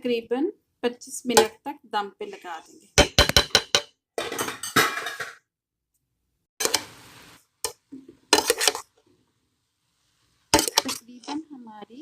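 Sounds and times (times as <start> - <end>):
metal pot knock ringing: 3.0 - 3.9.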